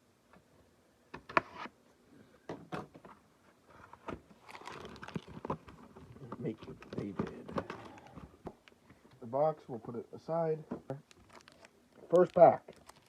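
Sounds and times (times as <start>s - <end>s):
cardboard rustling: 3.7s - 8.4s.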